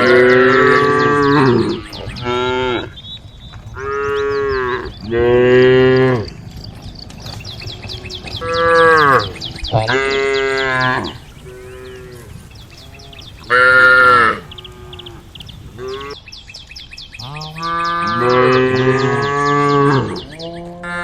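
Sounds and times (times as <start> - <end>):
cows mooing: 0.0 - 16.2, 17.2 - 21.0
fast high chirping: 0.0 - 16.2.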